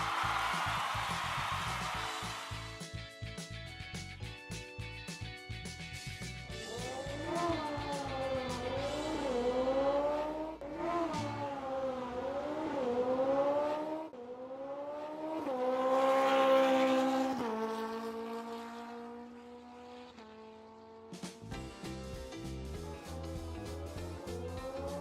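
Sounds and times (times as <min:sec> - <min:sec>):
race car engines revving: 0:00.0 - 0:02.8, 0:06.6 - 0:21.4, 0:22.7 - 0:25.0.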